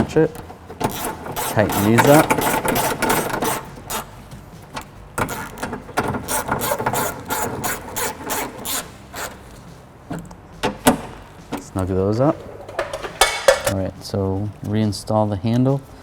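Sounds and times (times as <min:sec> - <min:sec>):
hand ratchet clicking: 0:00.4 - 0:04.2, 0:04.8 - 0:09.4.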